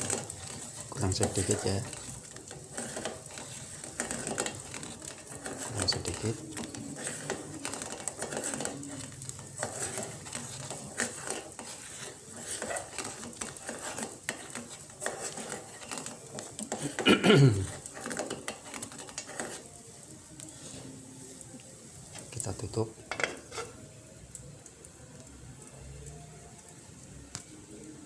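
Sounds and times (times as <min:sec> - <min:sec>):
spoon clinking and scraping a pot: 0:00.0 - 0:17.0, 0:17.6 - 0:19.8, 0:22.1 - 0:23.9.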